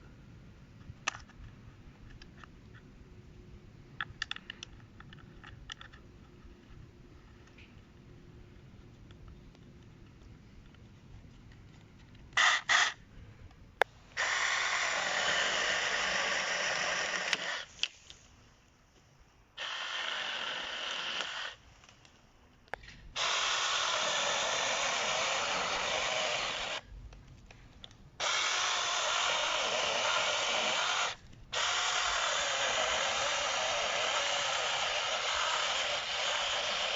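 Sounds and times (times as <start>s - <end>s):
mini chainsaw running in bursts: 14.2s - 17.7s, 19.6s - 21.6s, 23.2s - 26.8s, 28.2s - 36.9s.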